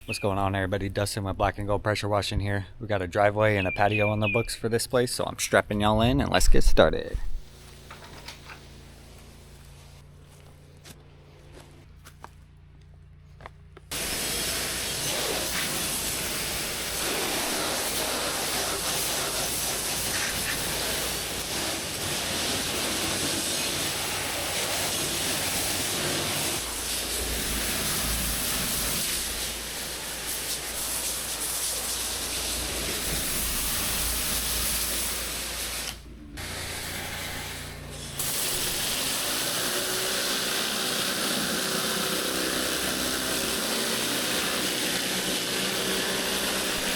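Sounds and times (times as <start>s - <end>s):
pressure washer spraying concrete: 7.4s - 10.0s, 13.9s - 46.9s
machine humming: 18.8s - 40.6s.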